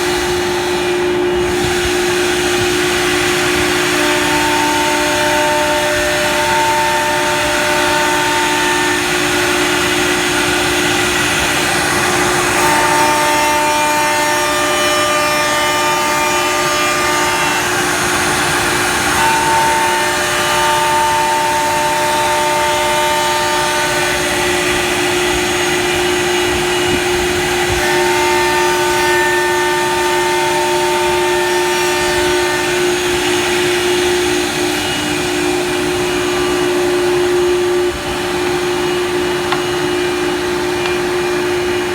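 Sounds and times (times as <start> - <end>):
loud rushing noise: 0.0 - 28.9
cnc router whine: 0.0 - 41.9.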